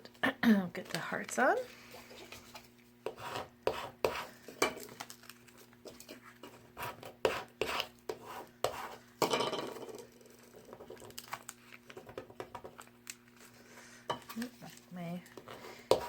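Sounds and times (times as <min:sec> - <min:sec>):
rubbing scrape on tabletop: 0:02.2 - 0:04.3, 0:06.1 - 0:09.0.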